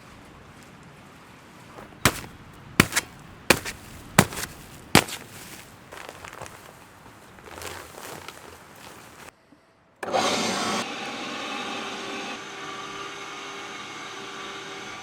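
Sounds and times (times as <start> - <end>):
sharp knocks: 2.1 - 5.3.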